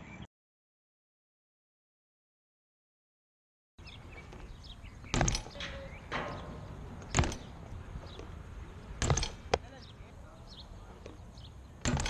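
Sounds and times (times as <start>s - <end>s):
sharp ringing knocks: 5.0s - 8.3s, 8.9s - 9.6s.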